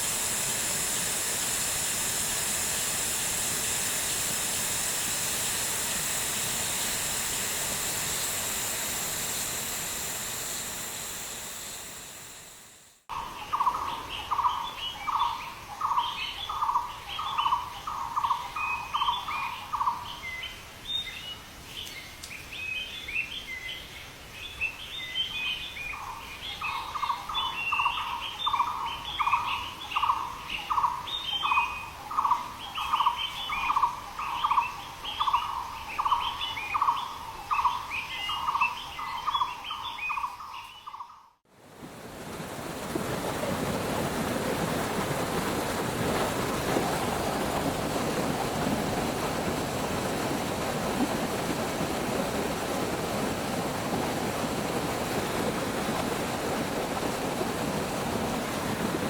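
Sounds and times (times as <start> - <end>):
steady rushing noise: 0.0 - 13.0, 41.6 - 59.0.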